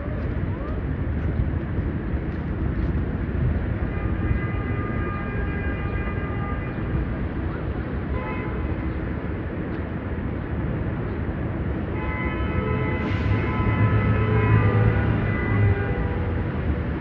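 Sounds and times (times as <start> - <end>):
city traffic rumble: 0.0 - 17.0
car horn: 3.9 - 7.0, 8.2 - 8.7, 11.9 - 16.9.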